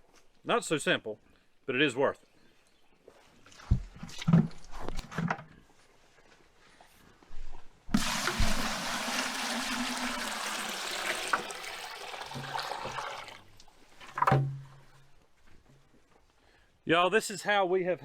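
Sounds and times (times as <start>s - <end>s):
water pouring and splashing: 7.9s - 14.3s.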